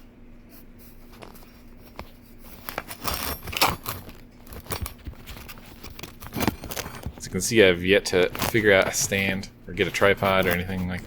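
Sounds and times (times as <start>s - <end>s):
faint steady hum: 0.0s - 11.0s
metal clinks and rattles: 2.6s - 7.5s.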